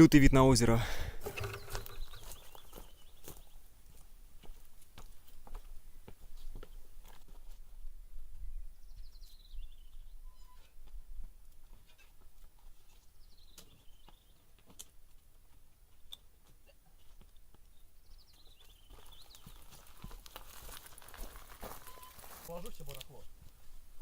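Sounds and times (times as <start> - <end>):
songbird trilling: 1.4 - 3.6.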